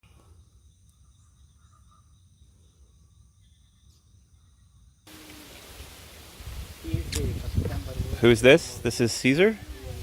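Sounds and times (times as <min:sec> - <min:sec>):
insects trilling: 0:00.0 - 0:06.9.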